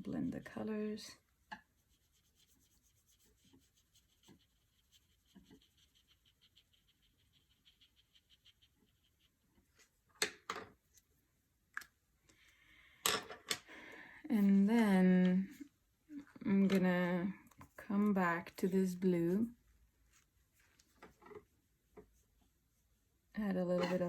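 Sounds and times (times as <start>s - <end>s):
brush strokes on paper: 1.7s - 9.9s, 18.6s - 23.2s.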